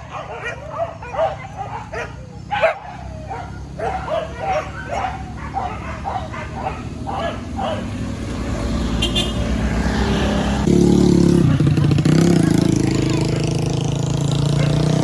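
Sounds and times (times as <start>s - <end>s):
dog yelping: 0.0s - 8.0s
engine hum: 0.0s - 15.0s.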